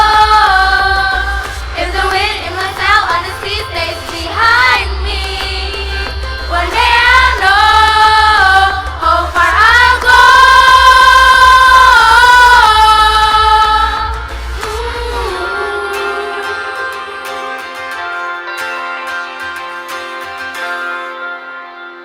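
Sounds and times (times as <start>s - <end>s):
girls choir singing: 0.0s - 17.6s.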